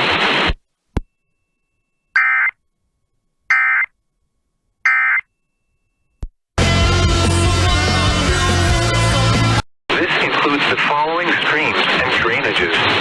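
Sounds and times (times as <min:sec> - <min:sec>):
two-tone digital data tones: 0:01.0 - 0:02.6, 0:03.5 - 0:03.9, 0:04.9 - 0:05.8.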